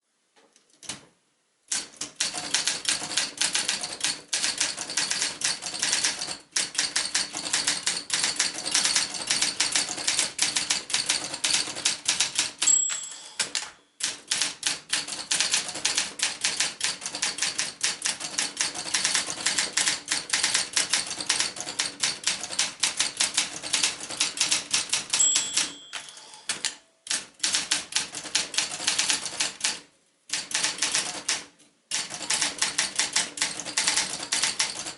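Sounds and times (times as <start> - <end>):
typewriter typing: 1.7 - 34.9
typewriter margin bell ringing: 12.6 - 14.2, 25.1 - 26.8.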